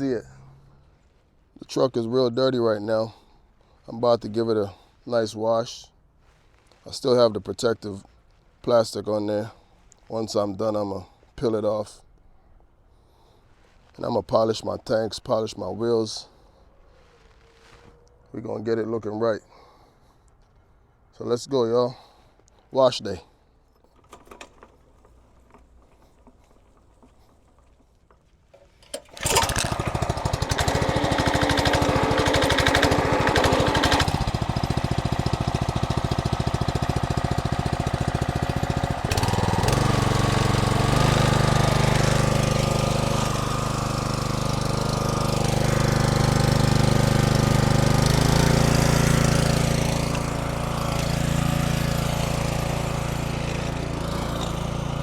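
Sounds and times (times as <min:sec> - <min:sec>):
pressure washer engine running: 0:28.9 - 0:55.0.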